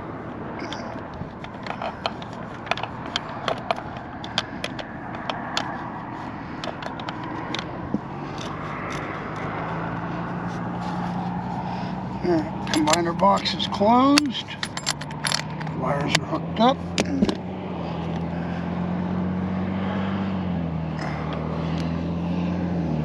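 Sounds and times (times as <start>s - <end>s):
sharp clicks and light knocks: 0.6s - 11.6s, 12.5s - 16.3s.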